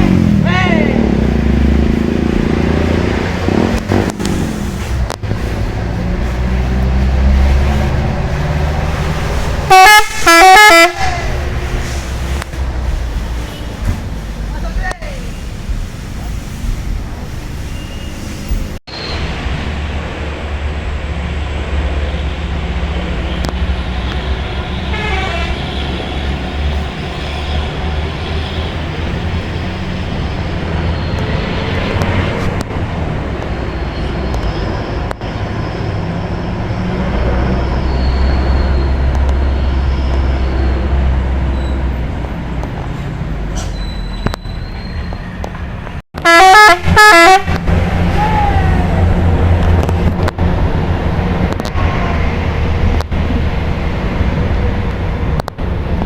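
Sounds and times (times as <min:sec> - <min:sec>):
bus engine running: 0:00.0 - 0:56.0
road traffic noise: 0:00.0 - 0:56.0
horns tooting: 0:09.3 - 0:12.3, 0:23.2 - 0:31.5, 0:46.2 - 0:49.3.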